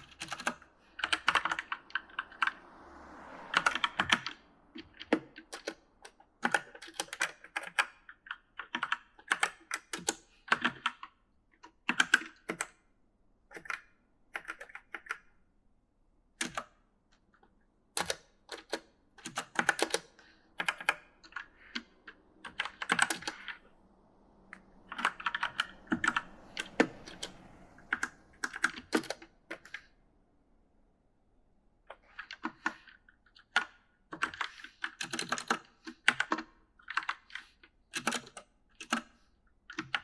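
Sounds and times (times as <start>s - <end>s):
keystrokes clattering: 0.0s - 2.6s, 3.5s - 12.8s, 18.0s - 23.6s, 24.5s - 29.9s, 31.9s - 40.0s.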